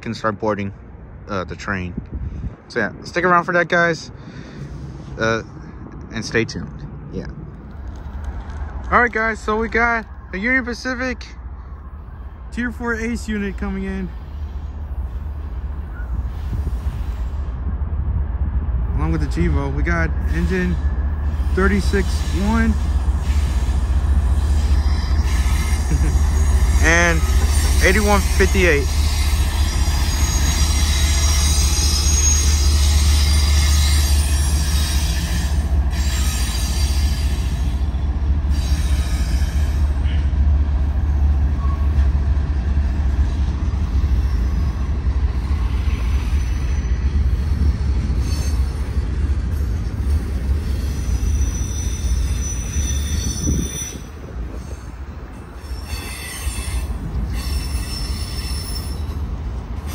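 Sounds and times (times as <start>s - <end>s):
freight train rumbling past: 0.0s - 59.9s
high wheel squeals: 20.2s - 40.4s, 41.0s - 42.3s, 43.2s - 59.9s.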